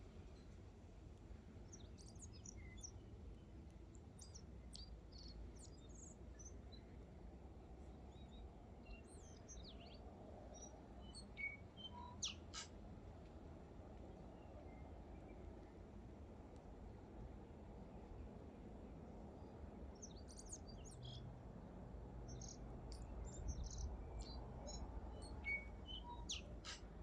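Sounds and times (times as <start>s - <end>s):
birds chirping faintly: 1.5s - 27.0s
sharp bird calls: 22.3s - 27.0s.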